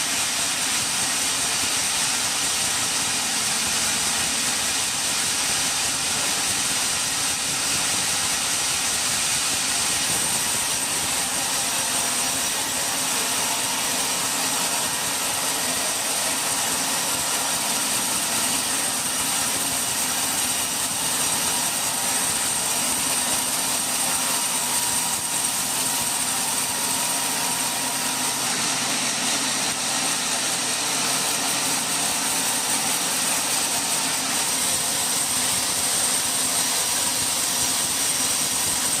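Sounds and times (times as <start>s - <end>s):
sawmill saw running: 0.0s - 39.0s.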